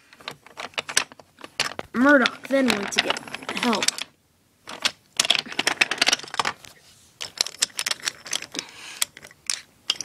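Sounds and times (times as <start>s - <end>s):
wooden toy trains clattering on track: 0.2s - 4.1s, 4.7s - 6.6s, 7.2s - 10.0s.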